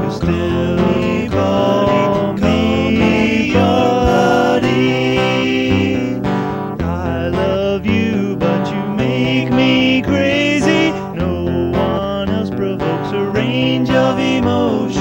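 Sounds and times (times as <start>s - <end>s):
song with guitar: 0.0s - 15.0s.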